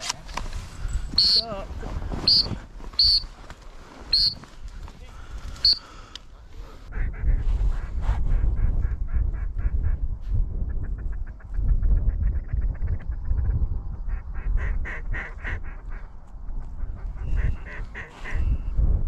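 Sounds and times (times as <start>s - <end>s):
wind rumbling on microphone: 0.0s - 19.0s
goose clucking calls: 1.2s - 1.5s, 2.2s - 3.3s, 4.1s - 4.4s, 5.5s - 5.8s, 10.8s - 18.6s
goose honking: 2.3s - 3.3s, 4.1s - 4.4s.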